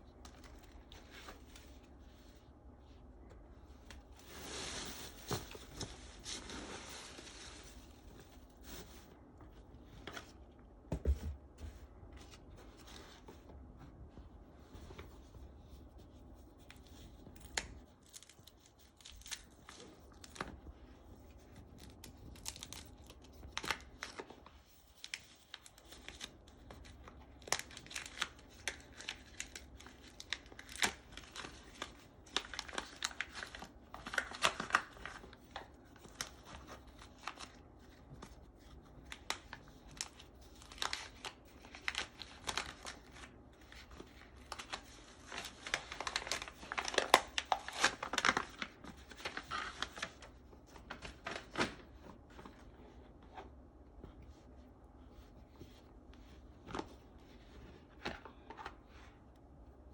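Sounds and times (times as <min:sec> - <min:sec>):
paper packaging crinkling and tearing: 0:16.6 - 0:20.6, 0:21.4 - 0:52.6.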